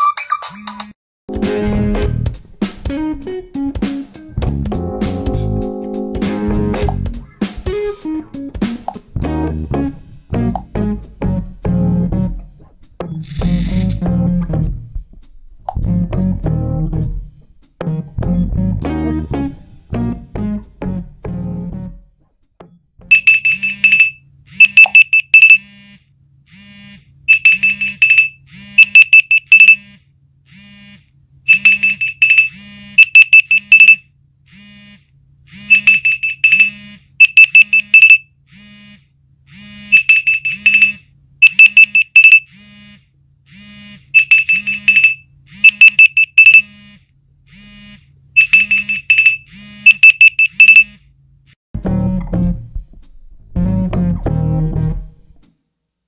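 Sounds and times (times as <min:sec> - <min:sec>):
phone vibration buzzing: 0:13.2 - 0:14.0, 0:23.1 - 0:51.0
rapid high alarm beeps: 0:23.1 - 0:25.6, 0:27.3 - 0:29.8, 0:31.5 - 0:34.0, 0:35.7 - 0:38.2, 0:39.9 - 0:42.5, 0:44.2 - 0:46.7, 0:48.4 - 0:51.0.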